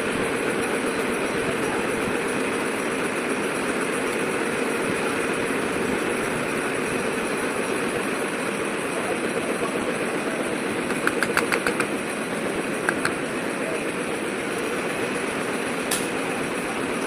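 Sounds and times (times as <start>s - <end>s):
wire bending machine running: 0.0s - 17.0s
sharp clicks: 10.9s - 12.0s, 12.8s - 13.3s.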